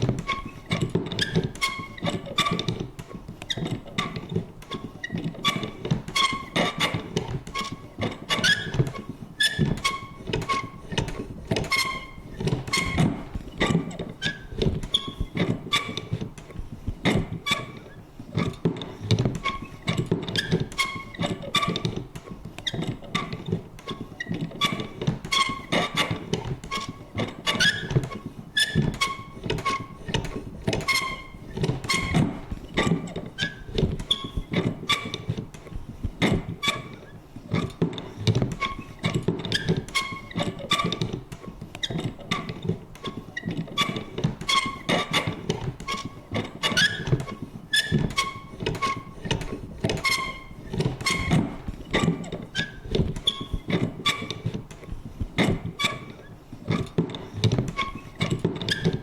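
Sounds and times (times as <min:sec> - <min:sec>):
creaky squeaks: 0:00.0 - 0:59.0
paper punch clicks and thunks: 0:18.4 - 0:36.7, 0:37.6 - 0:59.0.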